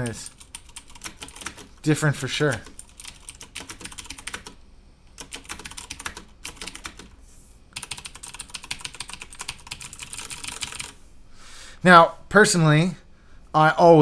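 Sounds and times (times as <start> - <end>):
clicky mechanical keyboard typing: 0.0 - 1.7, 2.4 - 4.6, 5.2 - 7.2, 7.8 - 11.0.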